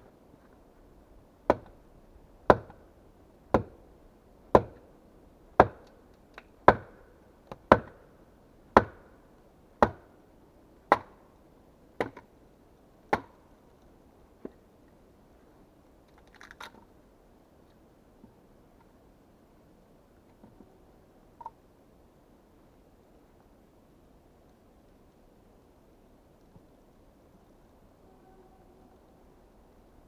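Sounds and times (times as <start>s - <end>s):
axe chopping into wood: 1.5s - 1.7s, 2.5s - 2.8s, 3.6s - 3.8s, 4.6s - 4.8s, 5.6s - 5.8s, 6.7s - 8.0s, 8.8s - 9.1s, 9.8s - 10.1s.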